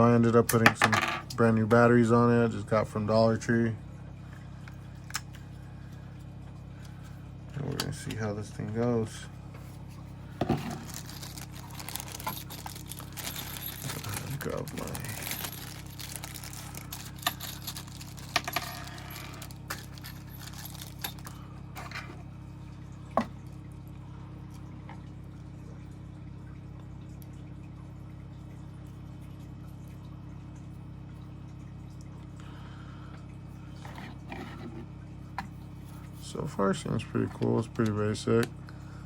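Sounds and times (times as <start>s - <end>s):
steady low hum: 0.0s - 39.0s
clicks and knocks of objects: 10.4s - 22.2s.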